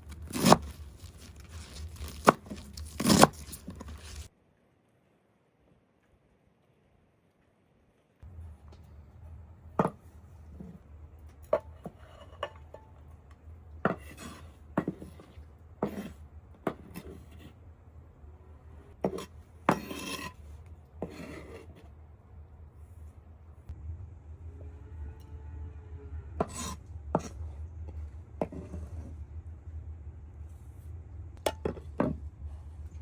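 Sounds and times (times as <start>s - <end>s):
steady low hum: 8.2s - 33.0s.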